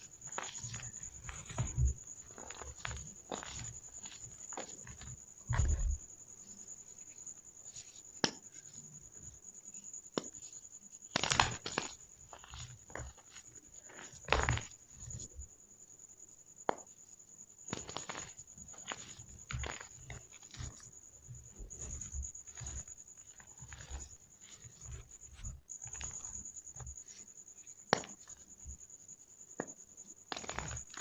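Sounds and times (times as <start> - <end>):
chalk balls crunching: 0.2 - 6.1, 10.2 - 15.3, 17.7 - 28.8, 30.3 - 31.0.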